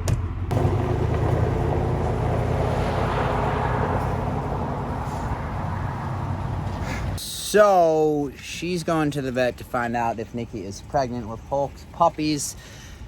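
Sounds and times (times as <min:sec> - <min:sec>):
vehicle engine rumble: 0:00.1 - 0:07.2
broad rushing noise: 0:00.5 - 0:07.2.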